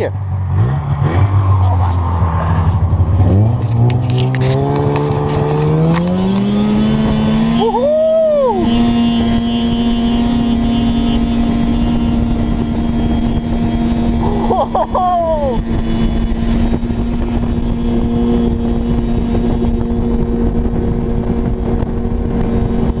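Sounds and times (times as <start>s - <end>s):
vehicle engine speeding up: 0.2s - 23.0s.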